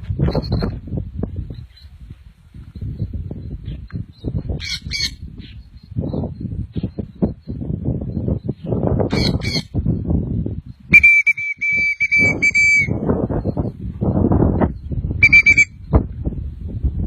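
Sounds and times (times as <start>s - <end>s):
rough rustling noise: 0.0s - 4.6s
shrill trilling whistle: 10.9s - 13.0s, 15.2s - 15.8s.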